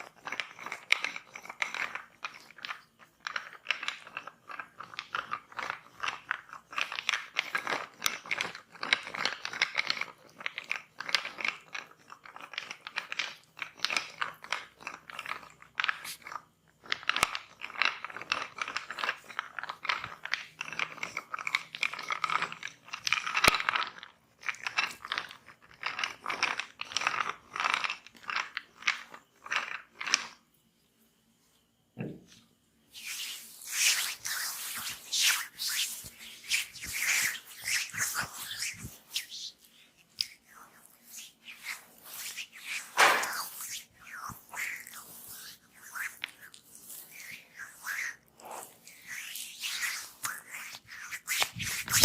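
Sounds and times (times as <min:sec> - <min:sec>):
hands rubbing oiled skin: 0:32.9 - 0:52.0.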